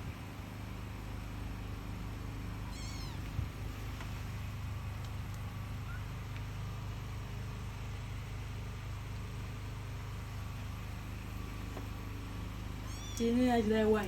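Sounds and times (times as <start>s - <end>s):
steady low hum: 0.0s - 14.0s
cat meowing: 2.7s - 3.3s, 12.8s - 13.3s.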